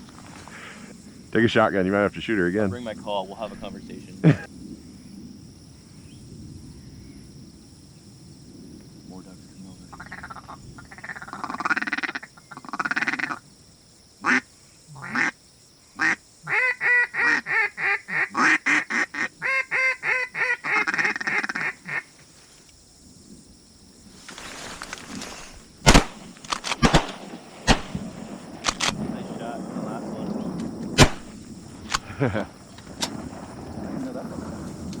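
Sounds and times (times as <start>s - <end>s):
duck quacking: 14.2s - 14.4s, 15.0s - 15.3s, 16.0s - 22.0s
sharp clicks: 24.8s - 29.0s, 30.6s - 32.1s.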